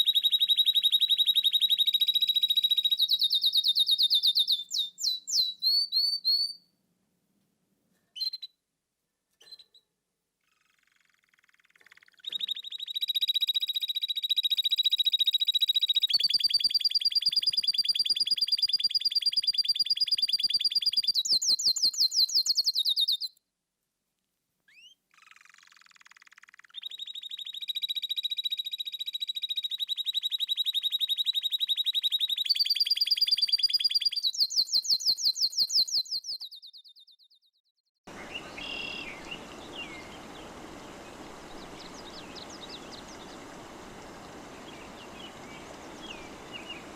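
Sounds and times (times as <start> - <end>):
songbird trilling: 0.0 - 6.6, 38.1 - 46.9
faint bird chirps: 0.0 - 6.8, 8.0 - 8.6, 9.4 - 23.4, 24.6 - 46.9
steady background hiss: 38.1 - 46.9.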